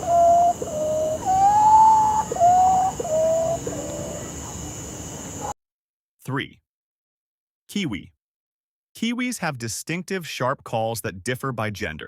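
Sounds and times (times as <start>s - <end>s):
potoo whistled notes: 0.0s - 4.2s.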